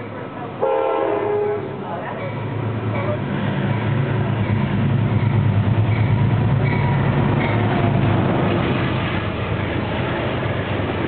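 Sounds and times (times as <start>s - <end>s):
low locomotive drone: 0.0s - 11.0s
train wheels rumbling on rail: 0.0s - 11.0s.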